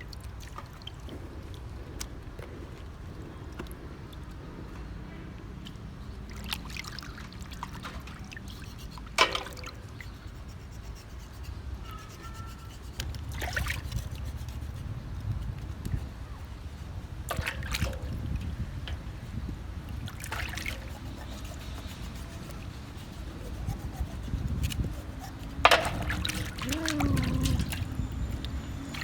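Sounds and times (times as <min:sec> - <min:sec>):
water trickling and pouring: 0:05.6 - 0:10.0.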